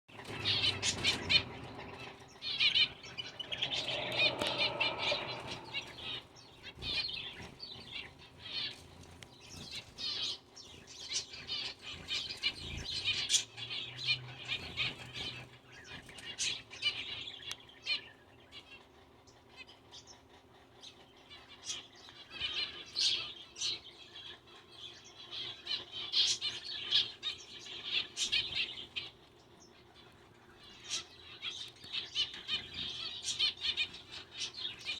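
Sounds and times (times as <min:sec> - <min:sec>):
finch chirping and singing: 0:00.2 - 0:16.1, 0:24.5 - 0:34.9.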